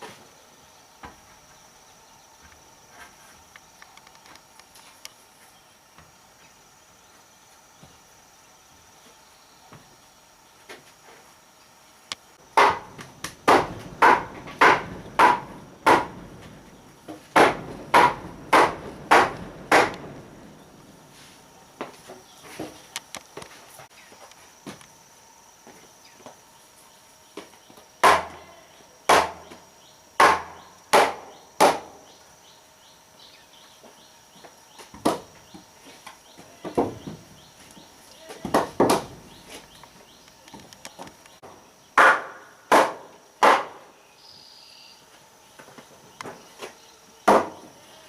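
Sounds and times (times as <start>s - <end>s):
tool striking wood: 12.5s - 16.4s, 17.1s - 20.1s, 28.0s - 28.4s, 29.1s - 29.6s, 30.2s - 32.0s, 38.5s - 39.2s, 42.0s - 43.8s, 47.3s - 47.6s.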